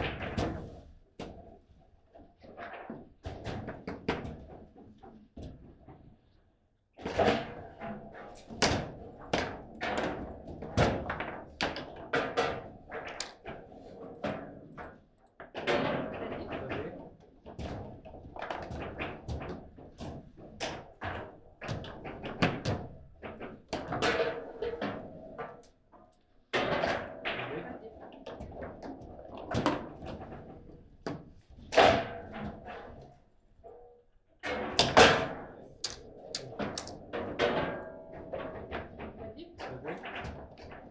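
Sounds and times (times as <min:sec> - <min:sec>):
table football ball knocks: 0:35.8 - 0:37.0.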